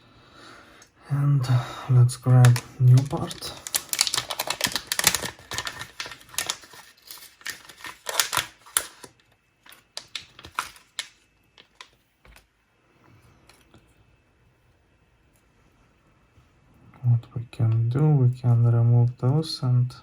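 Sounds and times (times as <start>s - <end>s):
clicks and rattles of small parts: 2.4s - 12.4s.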